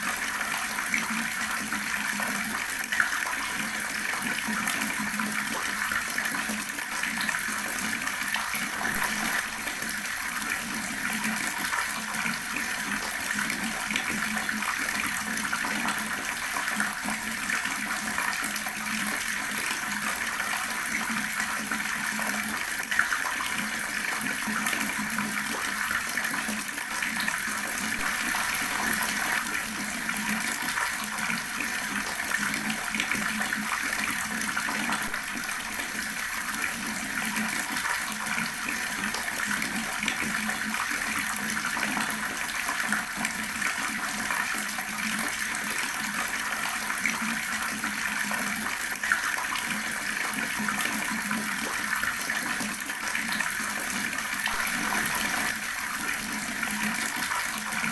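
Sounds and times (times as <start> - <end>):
water tap running: 7.0 - 43.0, 52.2 - 57.9.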